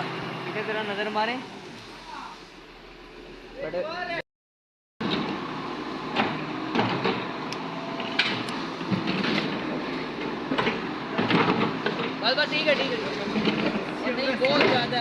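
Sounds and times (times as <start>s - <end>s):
scraping clatter: 8.1s - 15.0s.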